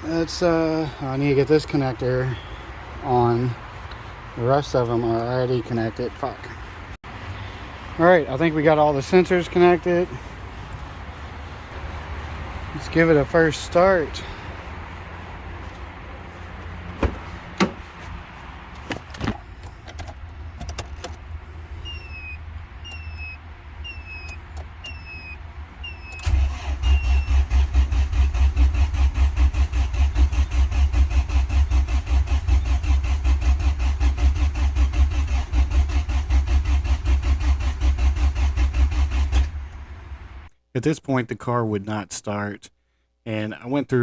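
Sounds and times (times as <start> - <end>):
starter cranking car engine: 19.6 - 40.5
short repeating chirp: 21.8 - 26.2
clicks: 23.9 - 25.2.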